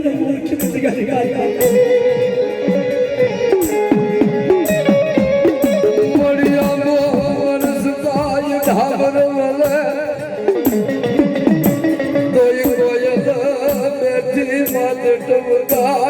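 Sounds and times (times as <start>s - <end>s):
percussion strikes: 0.0s - 16.0s
ornamented melody instrument: 0.6s - 16.0s.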